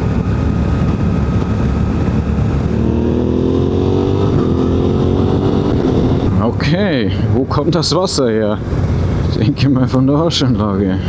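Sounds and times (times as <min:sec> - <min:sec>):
motorcycle engine accelerating: 0:00.0 - 0:06.6.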